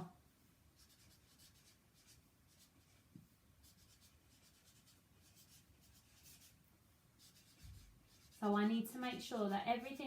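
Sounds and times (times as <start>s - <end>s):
pen scratching on paper: 3.6s - 6.6s, 7.2s - 10.0s.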